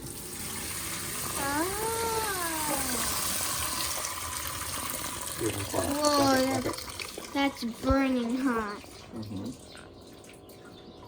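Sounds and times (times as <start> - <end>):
water poured into sink: 0.0 - 9.6
voice-like call: 1.4 - 3.2.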